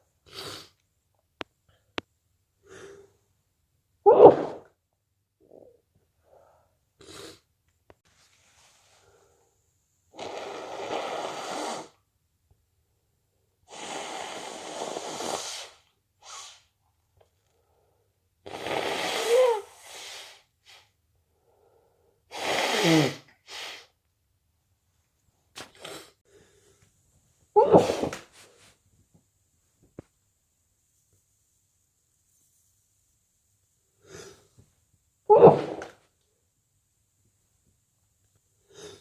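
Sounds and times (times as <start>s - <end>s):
person blowing nose: 0.2s - 0.8s, 10.1s - 12.0s, 13.7s - 16.7s, 18.4s - 20.9s, 22.3s - 24.0s, 27.6s - 28.6s, 35.3s - 36.0s
breaths: 2.6s - 3.2s, 6.2s - 6.8s, 19.8s - 22.3s, 26.2s - 26.9s
person sneezing: 4.1s - 4.7s, 18.6s - 20.3s, 22.3s - 23.9s, 27.6s - 28.3s, 35.3s - 36.0s.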